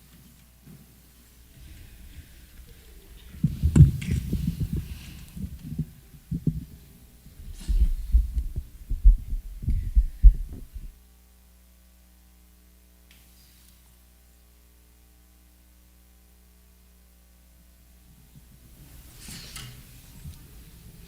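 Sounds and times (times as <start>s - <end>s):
faint steady hum: 0.0s - 21.0s
irregular low thumps and rumbles: 7.4s - 11.0s.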